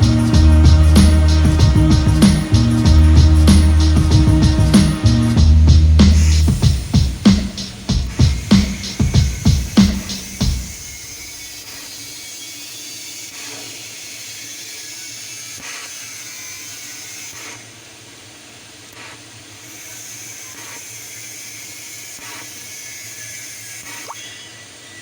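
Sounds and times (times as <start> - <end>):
low hum: 0.0 - 11.0
welding arc hissing: 0.0 - 17.7, 18.9 - 25.0.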